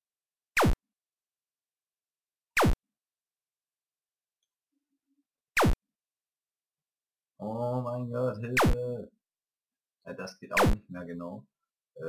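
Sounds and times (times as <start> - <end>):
electronic zap sweeping down: 5.6 - 5.8.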